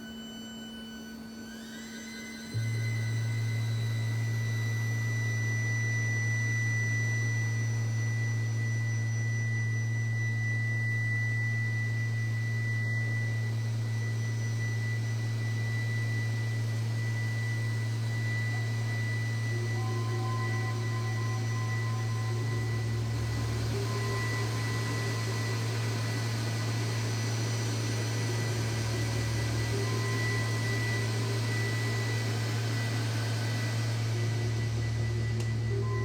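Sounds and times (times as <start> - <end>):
steady low synthesizer drone: 10.0 - 36.0
middle synthesizer tones: 17.8 - 36.0.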